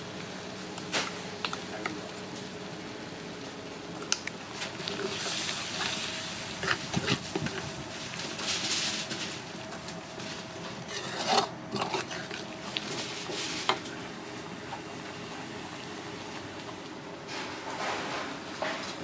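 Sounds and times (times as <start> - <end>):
food frying in oil: 0.0 - 16.9
utensils and dishes clinking: 10.9 - 13.9.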